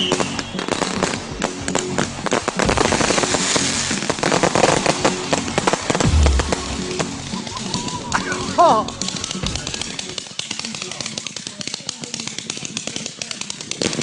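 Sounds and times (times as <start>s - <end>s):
fireworks cracking and popping: 0.0s - 8.2s
music playing: 1.5s - 8.6s.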